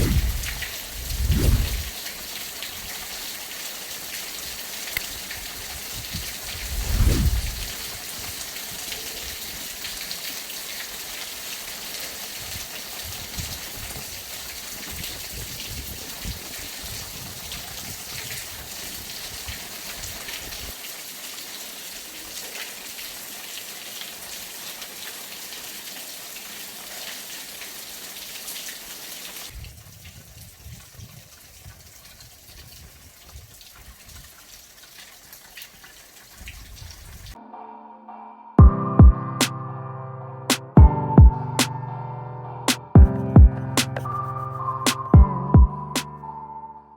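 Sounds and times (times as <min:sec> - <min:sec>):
low rumbles: 0:00.0 - 0:01.9
heavy rain falling: 0:00.0 - 0:29.6.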